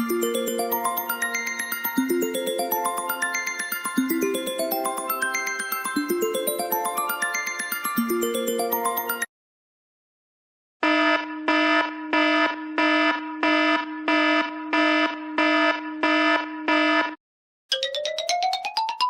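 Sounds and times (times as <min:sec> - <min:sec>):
upward gliding ringtone: 0:00.0 - 0:09.3, 0:17.7 - 0:19.0
buzzing alarm pulses: 0:10.8 - 0:17.2.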